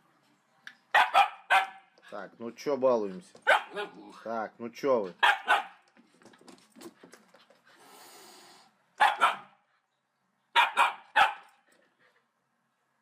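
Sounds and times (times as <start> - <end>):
dog barking: 0.9 - 1.9, 3.4 - 4.0, 5.2 - 5.8, 9.0 - 9.6, 10.6 - 11.5.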